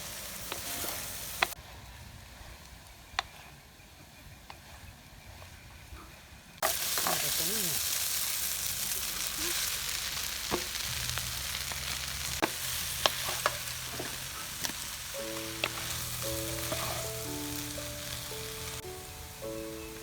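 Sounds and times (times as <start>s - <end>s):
food sizzling in hot oil: 0.0s - 1.6s, 6.6s - 20.0s.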